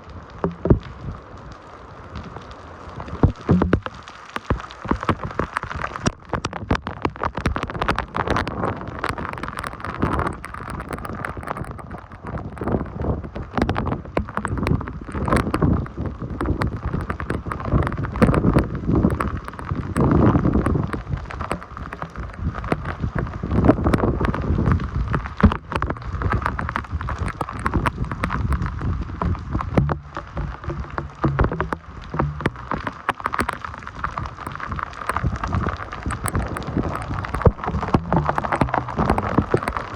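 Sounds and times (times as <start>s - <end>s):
heavy rain pouring: 0.0s - 39.9s
wind buffeting microphone: 8.2s - 39.9s
low hum: 28.0s - 33.2s.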